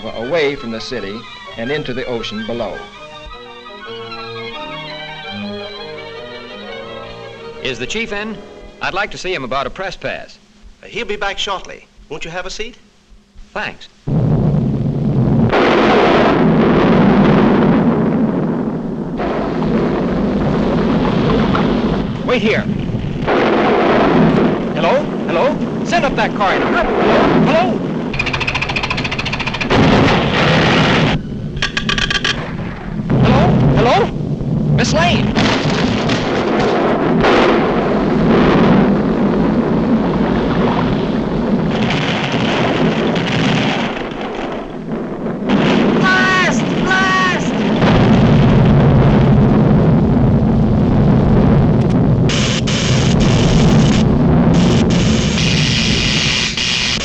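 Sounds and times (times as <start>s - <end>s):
cartoon volcano eruption rumble: 14.1s - 57.0s
hissing rush: 52.2s - 57.0s.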